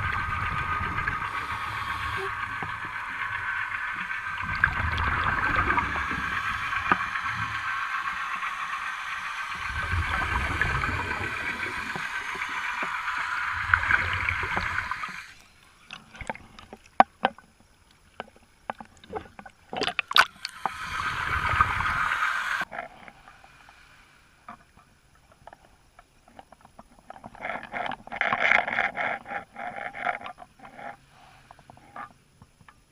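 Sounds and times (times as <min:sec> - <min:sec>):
exhaled bubbles gurgling underwater: 0:00.0 - 0:17.3, 0:18.9 - 0:23.1
steady underwater hiss: 0:00.0 - 0:32.9.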